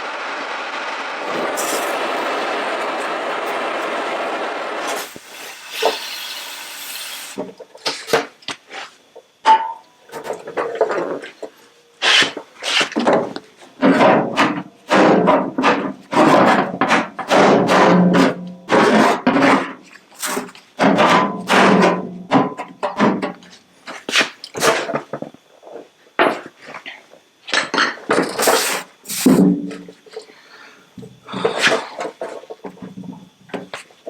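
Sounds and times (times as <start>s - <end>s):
blowlamp hissing: 0.0s - 7.6s, 28.4s - 29.4s.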